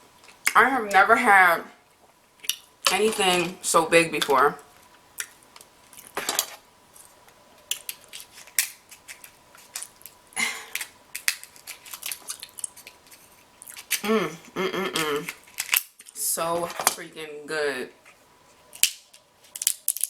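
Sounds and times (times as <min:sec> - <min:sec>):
person's voice: 0:00.5 - 0:01.8, 0:02.9 - 0:04.6, 0:14.0 - 0:15.3, 0:16.2 - 0:18.0.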